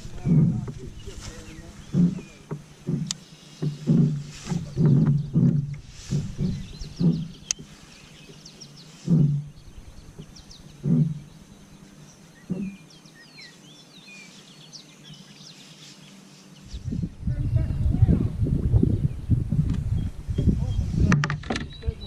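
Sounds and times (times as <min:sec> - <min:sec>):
low dull thumps: 0:00.0 - 0:13.0
river background noise: 0:00.0 - 0:17.2
birds chirping and calling: 0:00.0 - 0:22.0.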